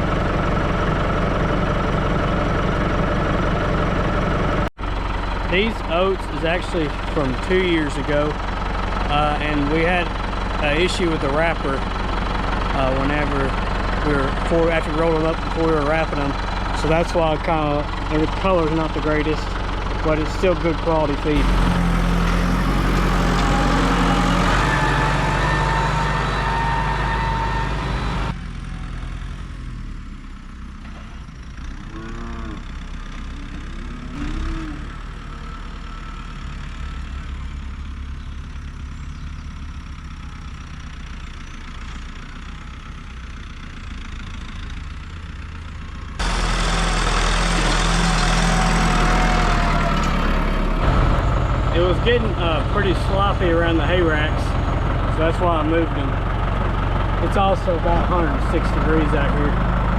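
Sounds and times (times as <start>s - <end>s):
tractor engine running: 0.0s - 59.9s
cows mooing: 31.9s - 35.2s.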